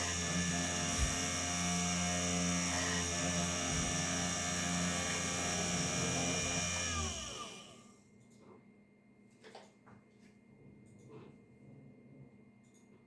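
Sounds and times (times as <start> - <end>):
spindle motor whining: 0.0 - 7.8.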